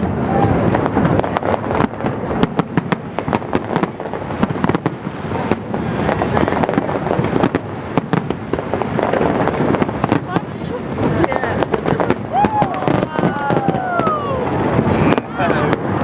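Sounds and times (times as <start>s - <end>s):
fireworks cracks and bangs: 0.0s - 16.0s.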